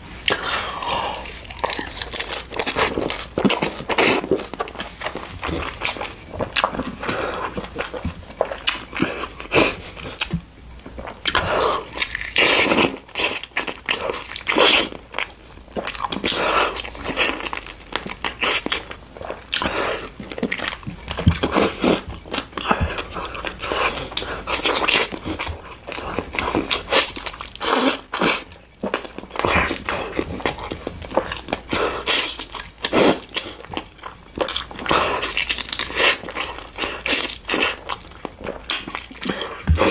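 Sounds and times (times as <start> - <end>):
person chewing crunchy food: 0.2 - 39.9.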